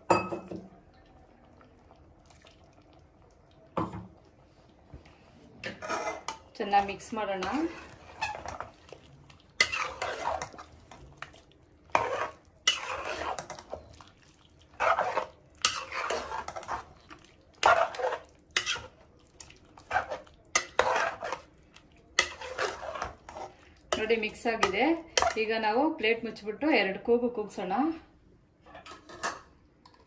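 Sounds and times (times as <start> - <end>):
spoon scraping curry in pot: 5.6 - 25.5.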